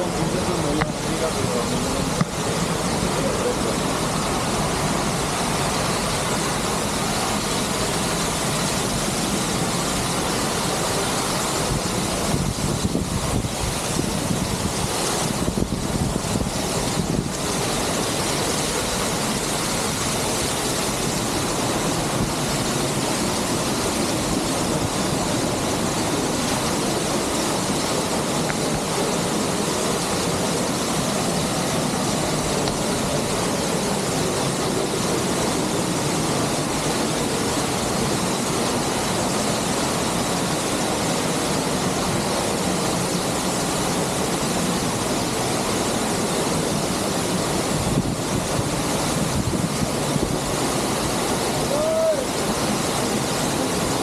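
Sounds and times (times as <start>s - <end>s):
waterfall roaring: 0.0s - 54.0s.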